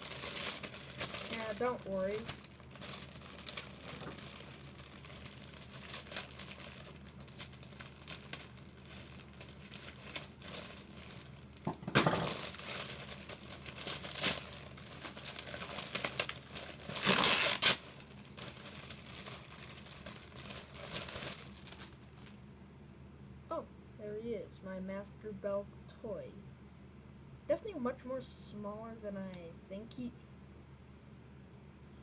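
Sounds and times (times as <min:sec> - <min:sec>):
toy packaging crinkling: 0:00.0 - 0:22.4.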